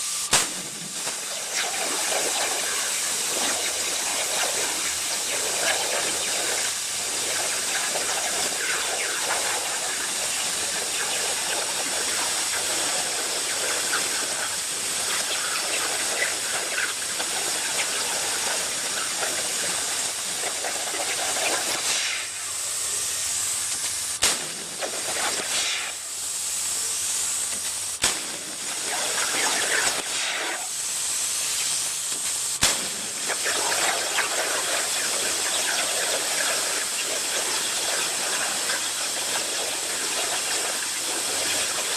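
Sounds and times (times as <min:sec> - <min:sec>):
plasma cutter hissing: 0:00.0 - 0:41.9
sharp crack: 0:00.3 - 0:01.7, 0:23.7 - 0:26.0, 0:27.6 - 0:30.7, 0:32.1 - 0:33.6.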